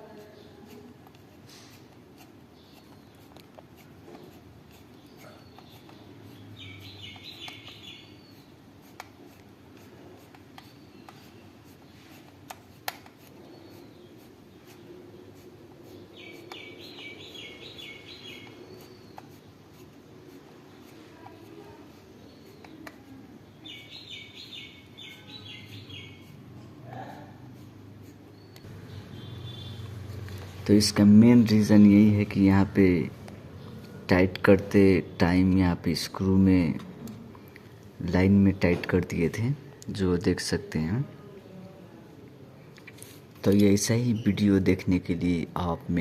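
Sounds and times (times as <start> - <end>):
bird chirping: 4.1 - 8.6, 13.4 - 19.5, 22.1 - 27.2, 28.3 - 35.5.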